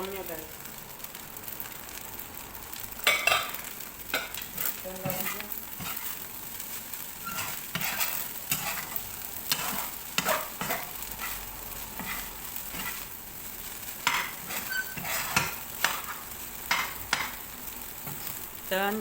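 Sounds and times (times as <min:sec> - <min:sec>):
fried rice sizzling in pan: 0:00.0 - 0:19.0
spatula scraping a pan: 0:03.0 - 0:18.5.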